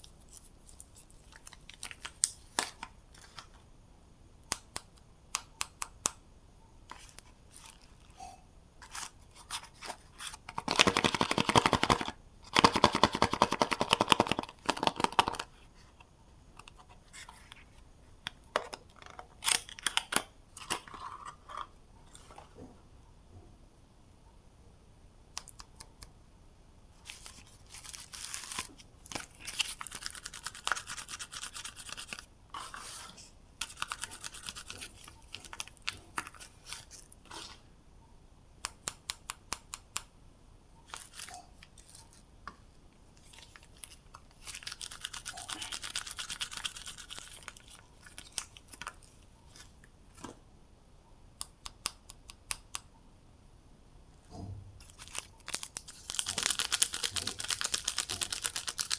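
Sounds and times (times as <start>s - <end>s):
wrapper rustling and tearing: 27.0s - 31.0s, 54.8s - 58.9s.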